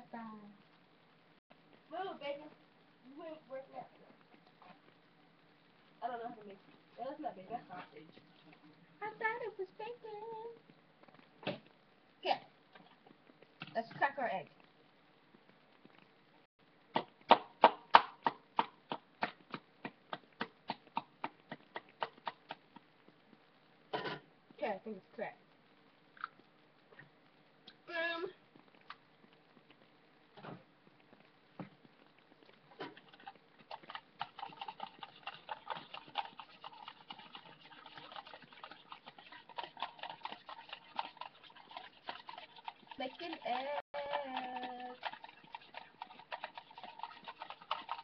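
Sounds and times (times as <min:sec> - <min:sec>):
fork clicking against bowl: 0:33.0 - 0:48.0.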